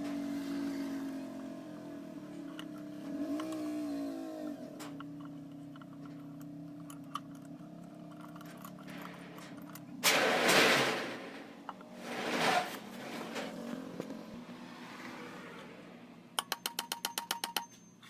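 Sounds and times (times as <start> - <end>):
motor hum: 0.0 - 12.1.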